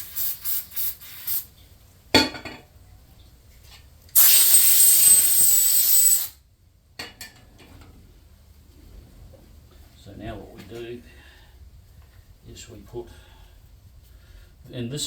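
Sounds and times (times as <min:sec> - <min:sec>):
aerosol spray hissing: 0:00.0 - 0:01.5, 0:04.2 - 0:06.4.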